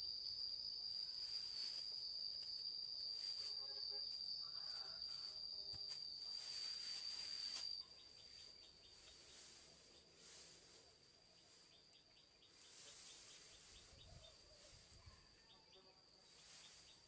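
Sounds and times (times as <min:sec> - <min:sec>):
faint outdoor background: 0:00.0 - 0:17.0
insect high-pitched trill: 0:00.0 - 0:17.0.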